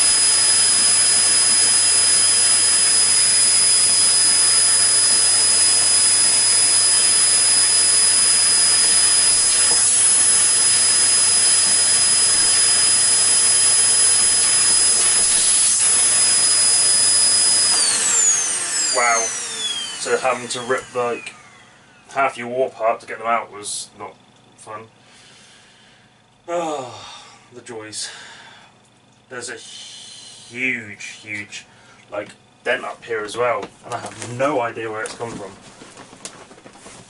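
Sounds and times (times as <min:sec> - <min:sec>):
high-speed electric motor whining: 0:00.0 - 0:22.2.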